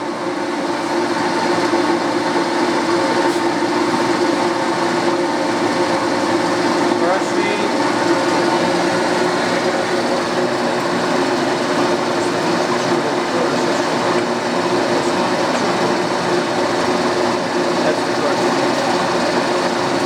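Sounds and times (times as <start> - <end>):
metal lathe whirring: 0.0 - 20.0.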